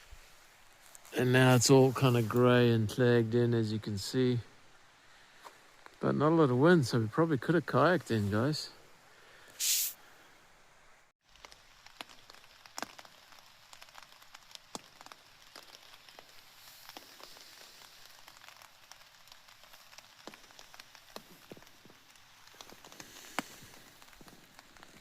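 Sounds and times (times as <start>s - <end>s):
faint rain hiss: 0.0s - 25.0s
short sharp hiss: 9.3s - 10.3s
raindrops tapping: 11.2s - 25.0s.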